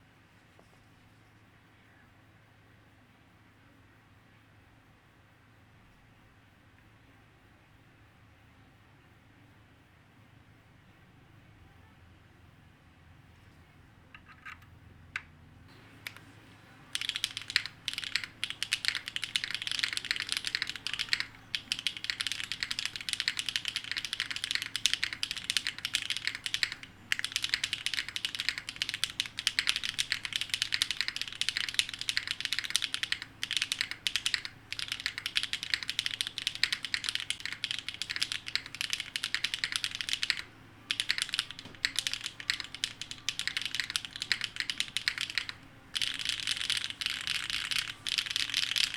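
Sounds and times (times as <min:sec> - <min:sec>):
mechanical keyboard typing: 0:16.9 - 0:48.9.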